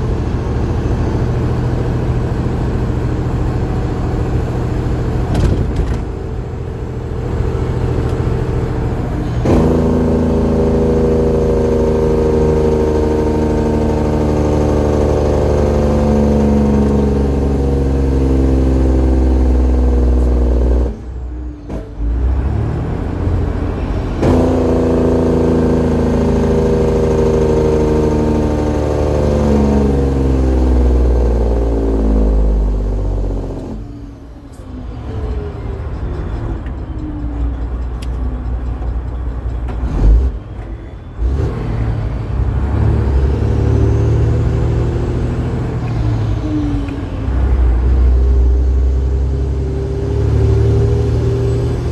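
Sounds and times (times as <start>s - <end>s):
truck engine under load: 0.0s - 51.9s.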